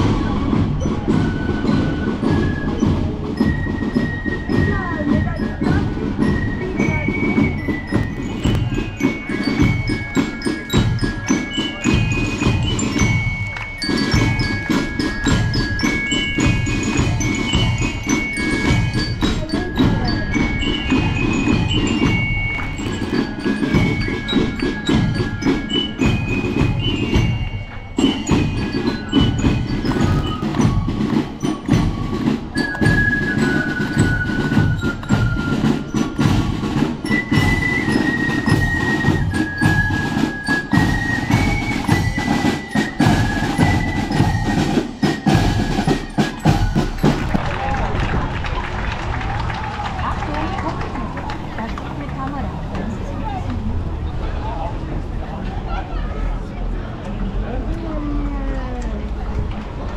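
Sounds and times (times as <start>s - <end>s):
bell lyre melody: 0.0s - 47.4s
snare and bass drumming: 0.0s - 53.0s.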